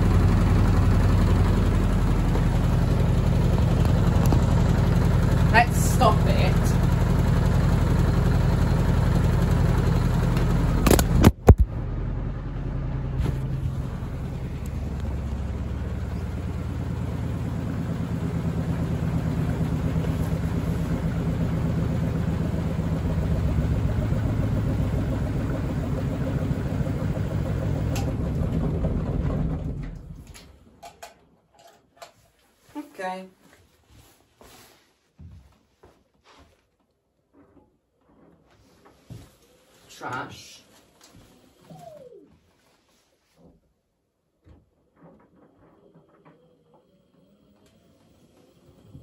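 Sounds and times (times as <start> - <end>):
machine humming: 0.0 - 30.4.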